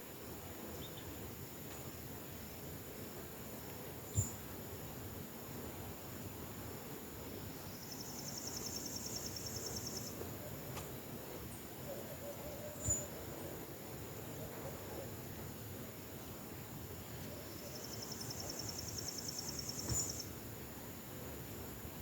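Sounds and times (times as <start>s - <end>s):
high insect whine: 7.6s - 10.2s, 17.4s - 20.4s.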